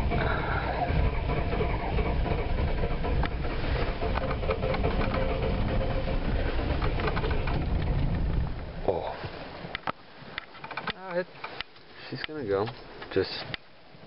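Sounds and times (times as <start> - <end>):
diesel engine cranking: 0.0 - 8.9.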